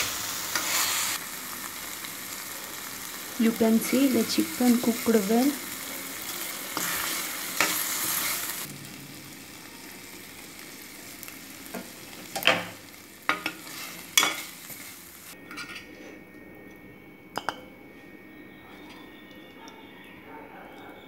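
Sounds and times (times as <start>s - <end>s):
chicken sizzling in a pan: 0.0s - 15.4s
spoon scraping a pan: 6.2s - 8.6s, 13.3s - 16.2s.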